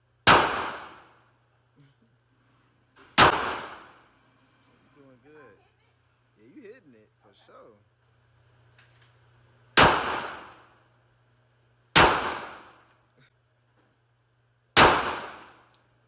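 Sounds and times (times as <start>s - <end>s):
pistol shots with echo: 0.3s - 1.1s, 3.2s - 4.0s, 9.8s - 10.6s, 12.0s - 12.8s, 14.8s - 15.7s.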